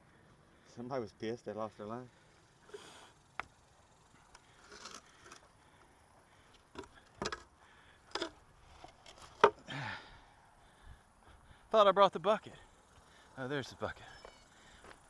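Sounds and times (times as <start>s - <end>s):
sharp clicks and knocks: 6.7s - 7.5s.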